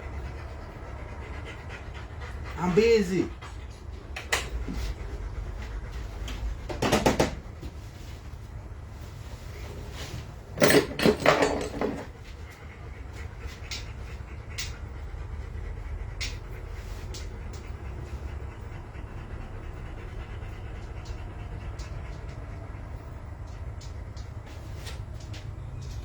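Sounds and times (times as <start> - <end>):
steady low hum: 0.0 - 6.8, 7.4 - 26.0
clattering knocks: 10.6 - 12.1.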